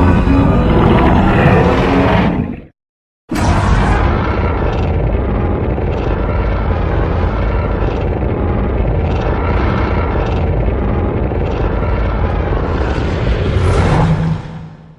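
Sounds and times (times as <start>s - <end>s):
loud rumbling rush: 3.3s - 14.9s.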